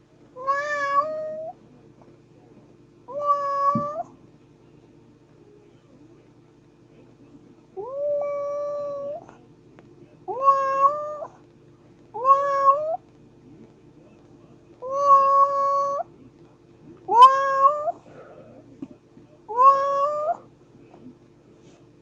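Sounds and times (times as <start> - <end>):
faint steady hum: 0.0 - 22.0
kitten meowing: 12.2 - 13.0, 17.1 - 18.0, 19.5 - 20.4.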